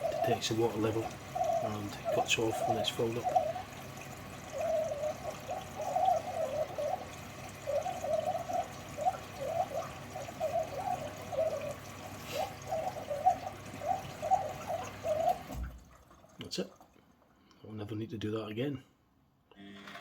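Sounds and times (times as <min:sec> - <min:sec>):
washing machine filling with water: 0:00.0 - 0:18.0.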